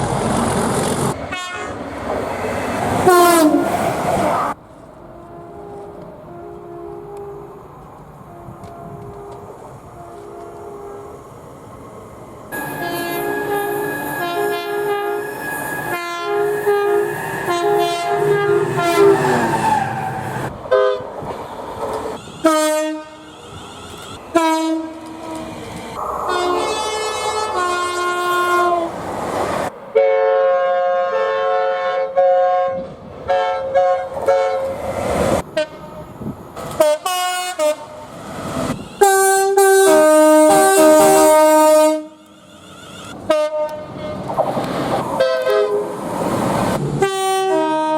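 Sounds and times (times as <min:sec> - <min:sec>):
two-tone train horn blasts: 0:01.3 - 0:01.8, 0:03.0 - 0:03.7, 0:05.1 - 0:07.6, 0:08.2 - 0:11.2, 0:12.5 - 0:19.6, 0:20.7 - 0:21.1, 0:22.2 - 0:25.5, 0:26.2 - 0:28.9, 0:30.0 - 0:34.8, 0:35.5 - 0:35.9, 0:36.7 - 0:38.0, 0:38.8 - 0:42.4, 0:43.2 - 0:44.2, 0:45.2 - 0:46.0, 0:47.0 - 0:47.9.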